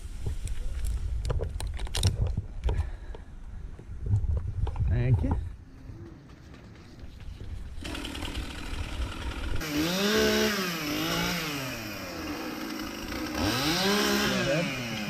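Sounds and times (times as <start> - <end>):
chainsaw revving: 7.8 - 15.0.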